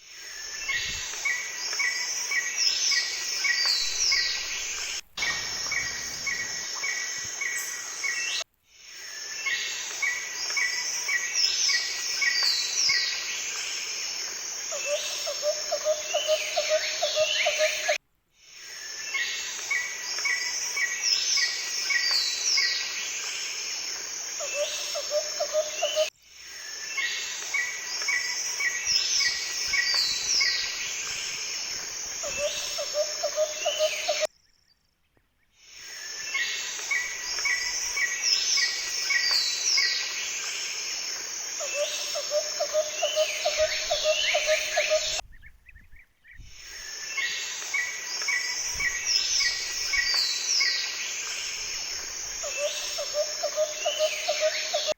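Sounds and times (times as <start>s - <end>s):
steady outdoor background: 0.0s - 54.9s
birds singing and chirping: 0.3s - 8.4s, 14.8s - 18.0s, 26.7s - 34.7s, 35.7s - 40.9s, 41.6s - 54.9s.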